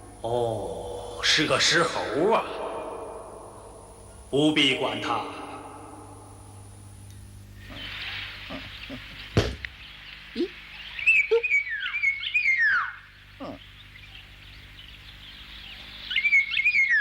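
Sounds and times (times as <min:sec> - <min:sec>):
steady hiss: 0:00.0 - 0:12.2
high chirping squealing animal calls: 0:07.6 - 0:09.3, 0:10.3 - 0:14.3, 0:15.1 - 0:17.0.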